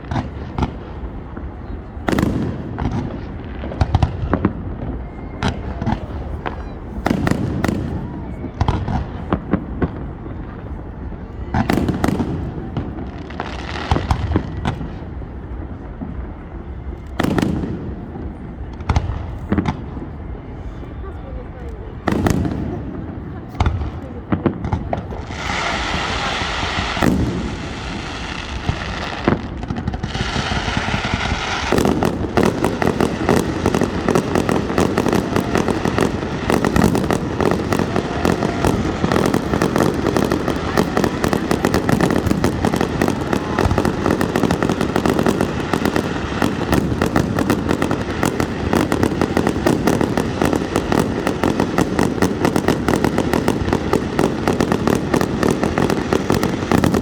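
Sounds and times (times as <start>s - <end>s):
firework crackle of rapid pops: 23.5s - 57.0s
firework hiss with tones: 25.1s - 57.0s.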